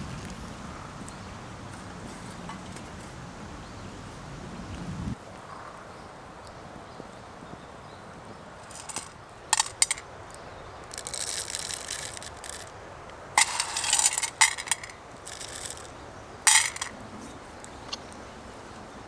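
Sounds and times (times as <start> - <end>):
scraping rattle: 1.6 - 3.3, 8.6 - 12.8, 13.4 - 17.4
small hard objects clicking: 8.6 - 17.0
sharp clink: 8.7 - 10.1, 13.4 - 15.9, 16.5 - 17.0.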